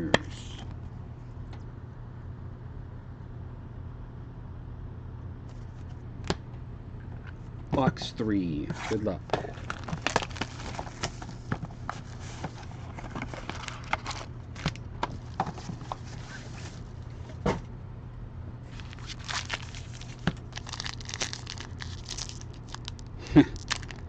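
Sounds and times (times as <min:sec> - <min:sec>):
steady low hum: 0:00.0 - 0:24.0
wrapper crinkling and tearing: 0:08.9 - 0:17.0, 0:18.7 - 0:24.0.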